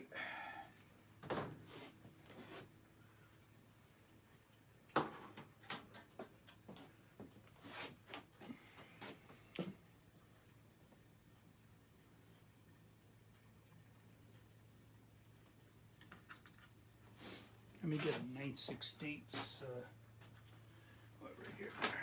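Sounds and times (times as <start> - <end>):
low steady hum: 0.0 - 22.0
metallic clicks and knocks of tools: 5.6 - 6.7.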